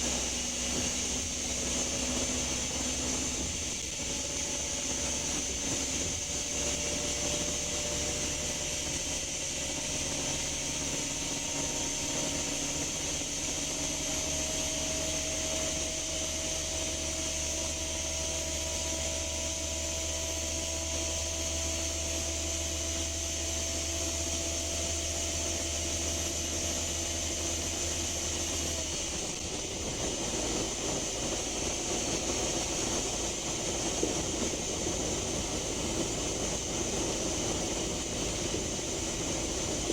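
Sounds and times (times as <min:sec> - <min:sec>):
bus diesel engine accelerating: 0:00.0 - 0:39.9.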